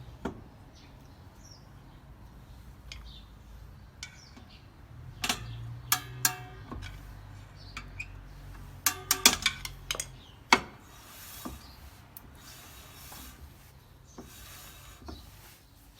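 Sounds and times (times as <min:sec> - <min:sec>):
sharp metallic clicks and knocks: 0:04.0 - 0:10.8.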